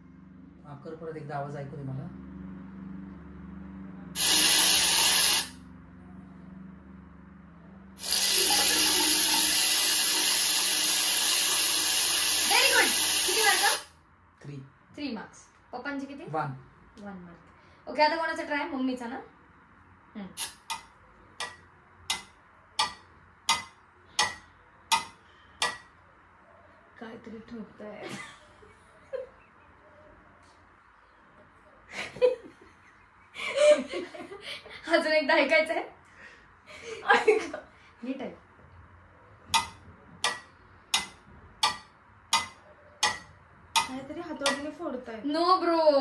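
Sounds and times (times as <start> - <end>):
tap water running through speaker: 8.0 - 13.9
clock ticking: 43.8 - 44.8.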